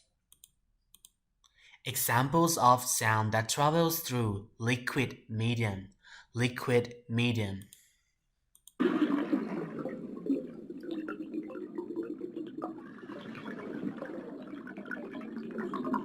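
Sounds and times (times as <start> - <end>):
small clicks: 0.0 - 1.6, 8.5 - 8.8
muffled underwater wash: 8.8 - 16.0.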